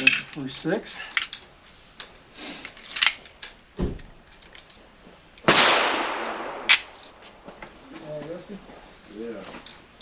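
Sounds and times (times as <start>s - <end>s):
pistol shot with echo: 5.4s - 7.0s
metallic clicks handling pistol: 6.1s - 7.2s.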